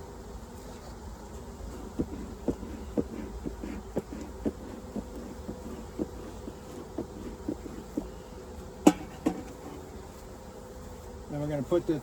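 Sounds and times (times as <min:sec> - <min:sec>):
bees buzzing: 0:00.0 - 0:12.0.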